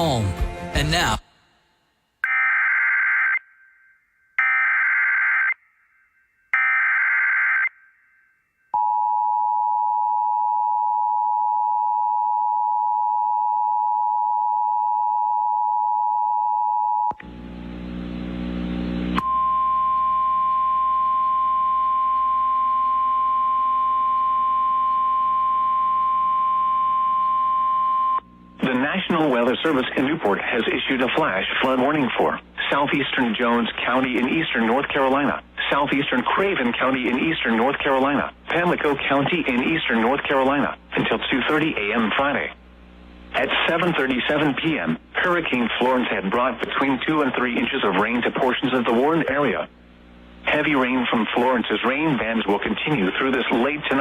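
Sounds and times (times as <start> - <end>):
two-tone attention signal: 19.2 - 28.2.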